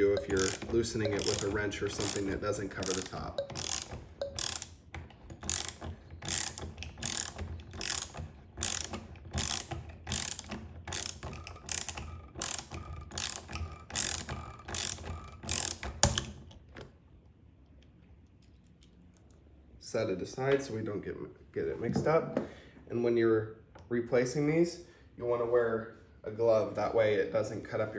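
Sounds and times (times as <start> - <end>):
socket ratchet clicking: 0.0 - 16.4.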